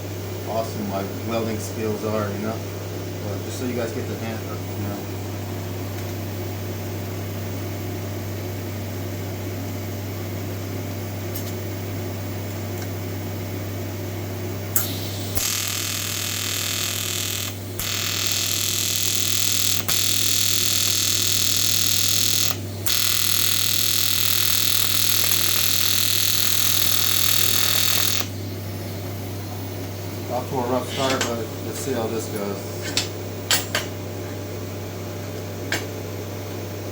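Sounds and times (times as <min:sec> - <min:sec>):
welding machine humming: 0:14.5 - 0:34.6
welding arc hiss-buzz: 0:14.6 - 0:34.0.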